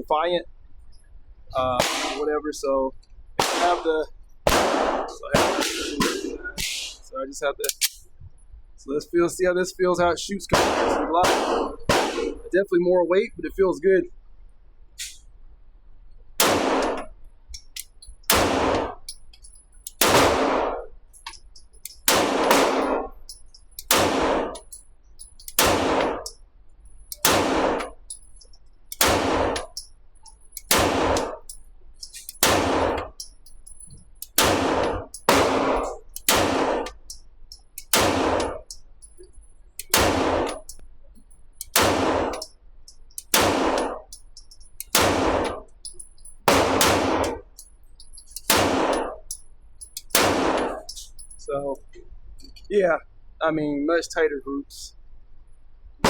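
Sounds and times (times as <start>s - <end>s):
pistol shots with ringing echo: 1.8s - 2.4s, 3.4s - 7.1s, 10.5s - 12.6s, 16.4s - 17.1s, 18.2s - 19.1s, 19.8s - 20.9s, 21.9s - 24.8s, 25.4s - 26.4s, 27.2s - 28.1s, 29.0s - 29.9s, 30.6s - 33.3s, 34.4s - 37.1s, 37.8s - 38.8s, 39.8s - 40.8s, 41.7s - 42.5s, 43.2s - 44.2s, 44.9s - 45.7s, 46.5s - 47.5s, 48.5s - 49.3s, 50.0s - 51.5s.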